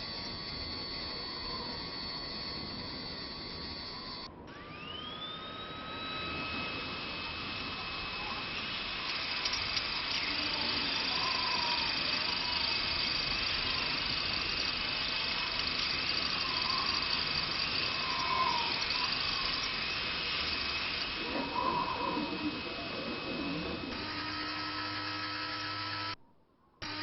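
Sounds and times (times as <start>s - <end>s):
faint wavering squeals: 0.0s - 26.2s
high machine whine: 0.0s - 26.2s
steady hiss: 6.3s - 25.9s.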